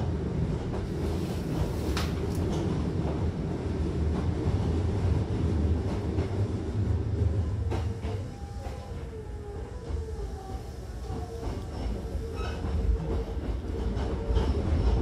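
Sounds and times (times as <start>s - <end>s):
train wheels rumbling on track: 0.0s - 15.0s
faint wavering squeal: 7.7s - 13.4s.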